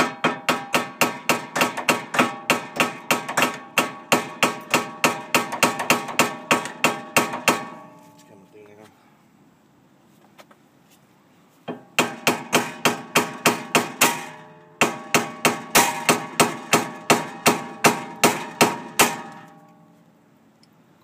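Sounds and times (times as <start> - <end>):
hammer striking metal stud: 0.0 - 8.0, 11.7 - 19.6.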